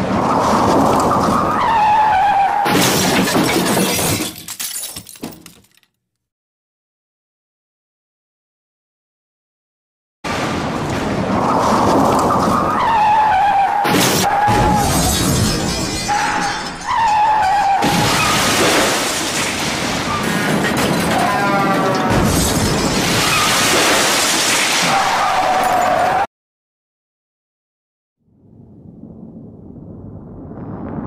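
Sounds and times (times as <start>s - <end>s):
glass shattering: 2.7s - 6.0s, 13.9s - 26.0s
crash impacts: 13.8s - 25.8s.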